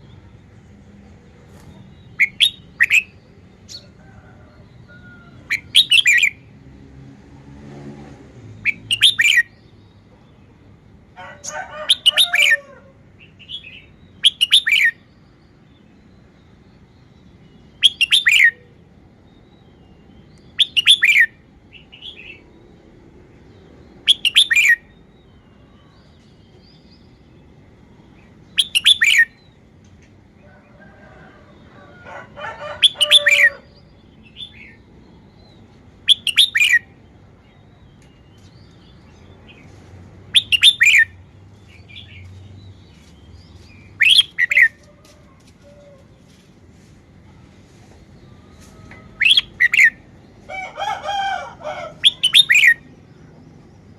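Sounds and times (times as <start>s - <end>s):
bird whistling song phrases: 20.5s - 21.4s, 24.0s - 24.9s, 28.6s - 29.4s, 36.1s - 36.9s, 40.4s - 41.2s, 52.0s - 52.8s.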